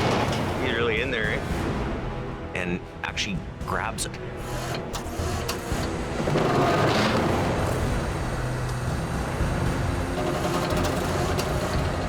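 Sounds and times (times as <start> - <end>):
diesel truck engines under load: 0.0 - 0.8, 4.4 - 12.0.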